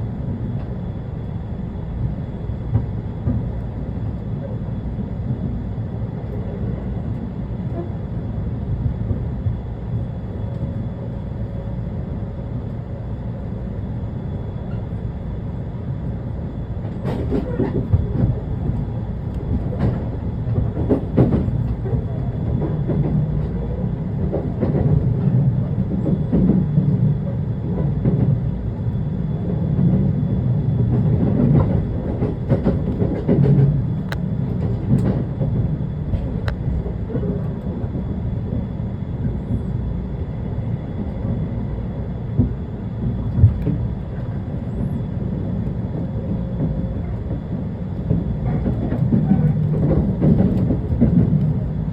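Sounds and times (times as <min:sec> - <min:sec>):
train rumbling: 0:00.0 - 0:51.9
wheels clacking on track: 0:16.9 - 0:26.7, 0:30.8 - 0:38.1.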